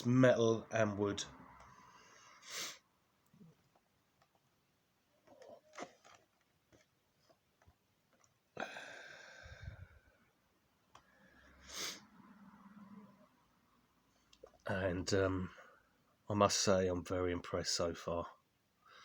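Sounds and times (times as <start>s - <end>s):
man sniffing loudly: 2.2s - 2.8s, 11.6s - 12.1s.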